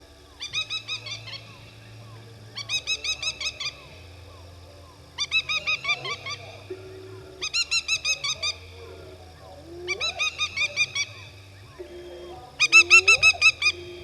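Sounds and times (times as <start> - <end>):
animal chirping calls: 7.4 - 14.0.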